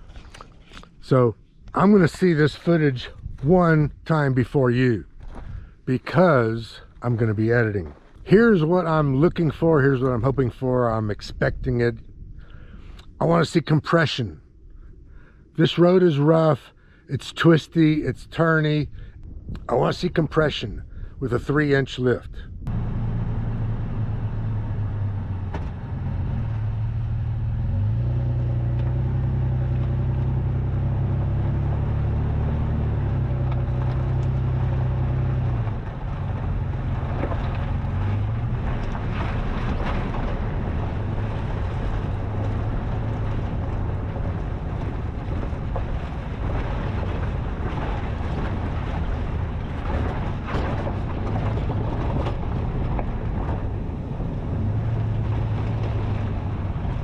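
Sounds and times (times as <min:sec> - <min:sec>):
knocks and crunches from rough track: 0:00.0 - 0:10.4, 0:22.7 - 0:57.0
suv engine pulling at low speed: 0:22.4 - 0:57.0.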